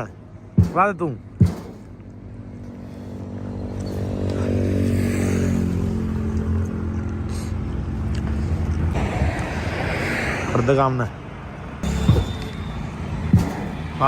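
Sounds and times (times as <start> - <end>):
engine running: 11.8 - 14.0.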